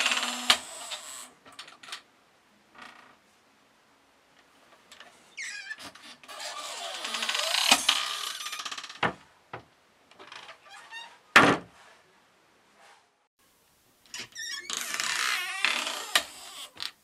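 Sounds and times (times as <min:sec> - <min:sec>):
door hinges creaking: 0:00.0 - 0:02.1, 0:02.7 - 0:03.2, 0:04.8 - 0:09.2, 0:10.1 - 0:11.7, 0:14.1 - 0:17.0
door slamming shut: 0:11.3 - 0:11.8.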